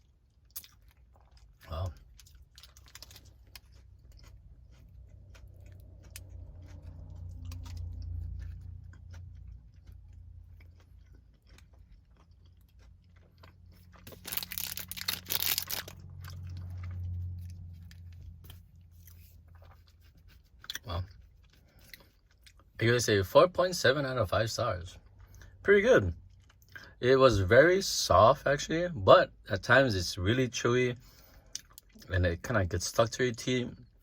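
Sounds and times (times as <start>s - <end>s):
close-up chewing: 0.0s - 22.8s, 25.0s - 25.6s, 26.2s - 27.0s, 31.1s - 32.1s.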